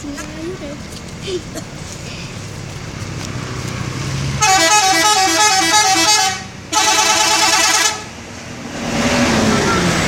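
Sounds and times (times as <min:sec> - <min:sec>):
musical bus air horn: 0:04.4 - 0:08.1.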